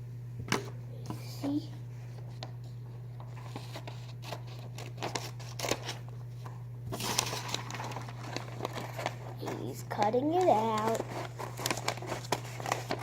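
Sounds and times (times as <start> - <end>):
paper rustling: 3.2 - 13.0.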